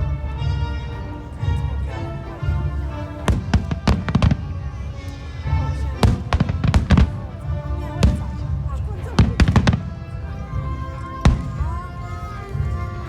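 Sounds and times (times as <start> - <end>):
show music with singing: 0.0 - 13.0
fireworks bursting with sharp bangs: 3.2 - 4.5, 6.0 - 8.4.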